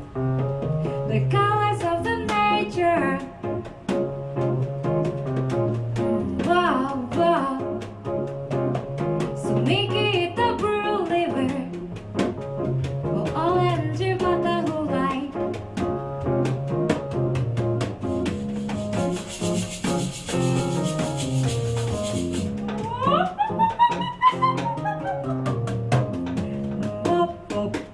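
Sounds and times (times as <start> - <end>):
piano: 0.0 - 27.9
woman singing: 1.1 - 3.5, 6.0 - 7.9, 9.4 - 11.9, 13.2 - 15.5, 22.7 - 24.1, 26.8 - 27.9.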